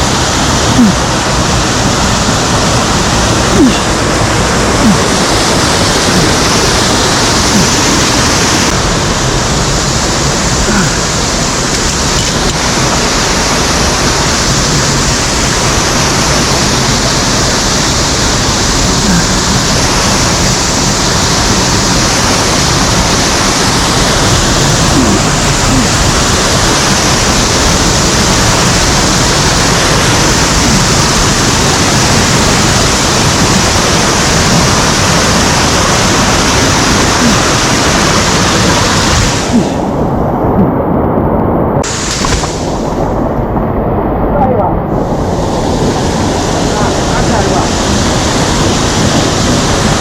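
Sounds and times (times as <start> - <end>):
water cascading over rocks: 0.0 - 50.0.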